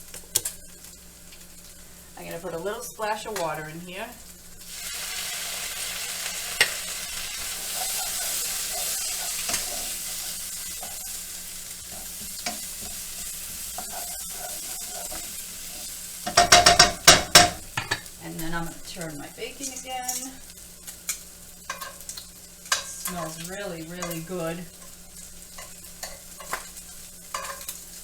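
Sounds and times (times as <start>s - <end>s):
onions sizzling in a frying pan: 0.0s - 28.0s
utensil tapping pan: 11.8s - 20.4s, 21.1s - 27.8s
utensil clanking against pan: 13.7s - 18.1s, 21.7s - 27.8s.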